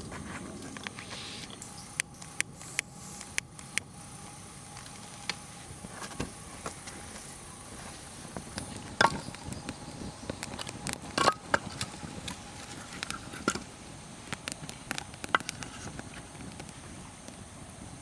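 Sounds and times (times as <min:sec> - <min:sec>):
campfire crackling and popping: 0:00.0 - 0:18.0
fire hissing: 0:00.0 - 0:18.0
sharp cracks: 0:08.3 - 0:17.4.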